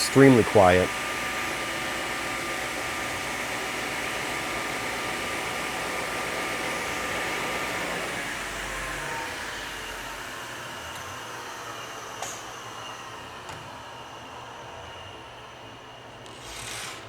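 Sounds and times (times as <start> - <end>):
table saw motor humming: 0.0 - 12.0.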